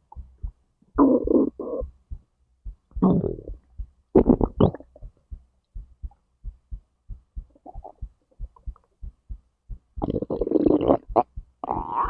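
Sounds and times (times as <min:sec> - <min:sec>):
heartbeat thumps: 0:00.0 - 0:12.0
stomach gurgling: 0:01.0 - 0:01.9, 0:04.2 - 0:05.1, 0:07.5 - 0:08.1, 0:10.0 - 0:12.0.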